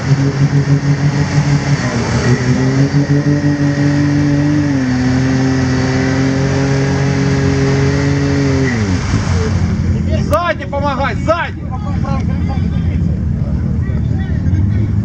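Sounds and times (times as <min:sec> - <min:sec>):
engine revving hard: 0:00.0 - 0:09.9.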